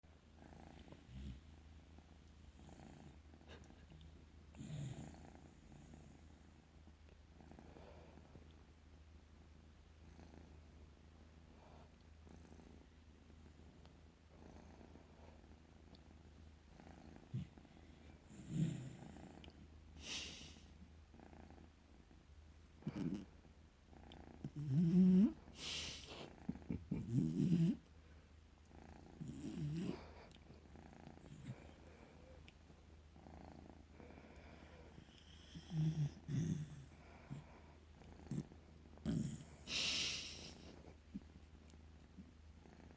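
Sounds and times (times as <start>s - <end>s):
cat purring: 0.2s - 42.9s
dog snoring: 0.4s - 1.5s, 2.5s - 3.6s, 4.5s - 6.6s, 16.7s - 20.6s, 22.8s - 23.3s, 23.9s - 27.8s, 28.7s - 32.1s, 33.2s - 40.7s.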